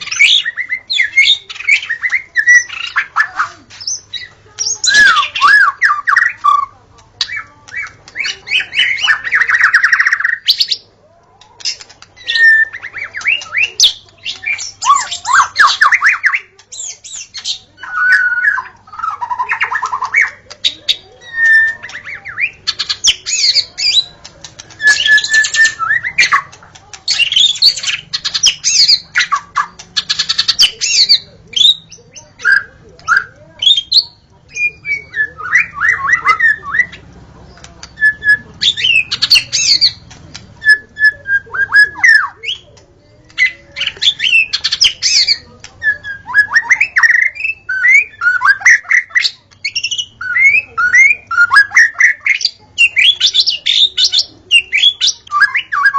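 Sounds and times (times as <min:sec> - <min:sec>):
songbird singing whistles and chatters: 0:00.0 - 0:55.9.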